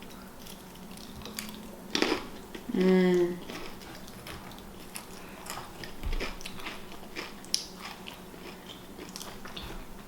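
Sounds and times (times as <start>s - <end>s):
wet chewing with crunches: 3.4s - 10.0s.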